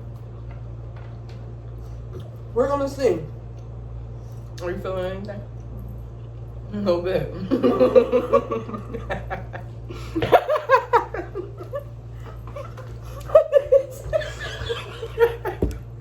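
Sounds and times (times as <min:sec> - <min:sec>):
steady low hum: 0:00.0 - 0:16.0
people laughing: 0:07.4 - 0:15.8.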